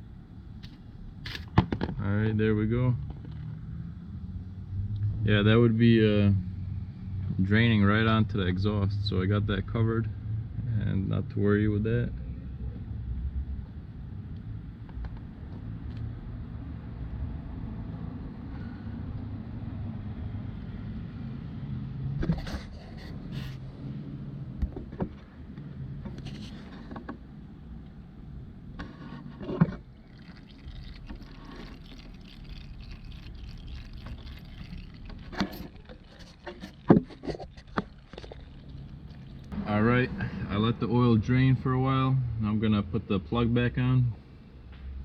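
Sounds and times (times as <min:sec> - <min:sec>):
oil pouring into drain pan: 0:29.7 - 0:39.6.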